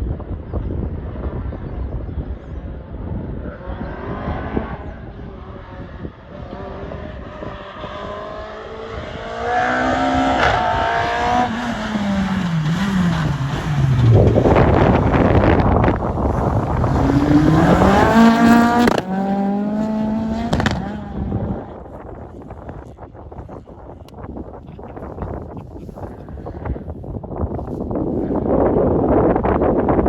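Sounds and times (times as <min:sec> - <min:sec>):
car engine revving: 0:03.5 - 0:22.3.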